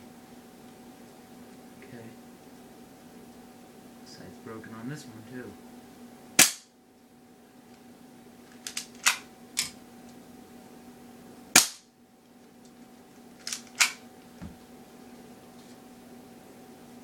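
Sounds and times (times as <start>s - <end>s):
faint steady hum: 0.0s - 17.0s
airsoft pistol firing: 6.4s - 6.7s, 11.6s - 11.9s.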